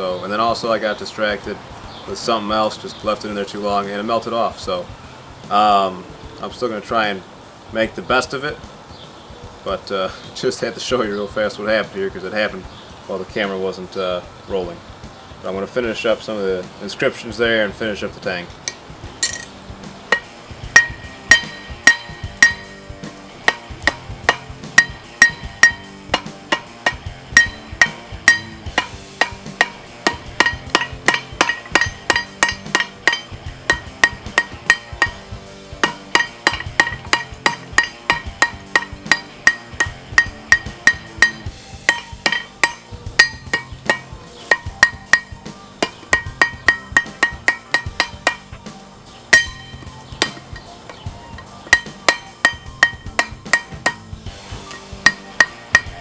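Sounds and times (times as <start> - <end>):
background music: 0.0 - 56.0
hammer tapping a chisel on steel: 20.1 - 48.7, 49.3 - 56.0.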